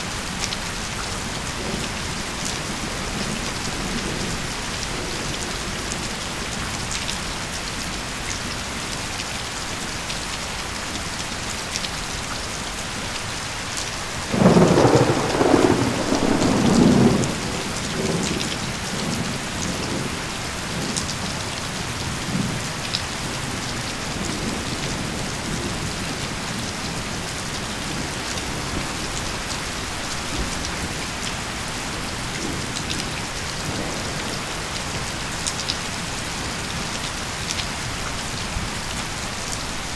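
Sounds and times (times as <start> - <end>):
heavy rain falling: 0.0 - 39.9
thunder crack and rumble: 14.2 - 21.3.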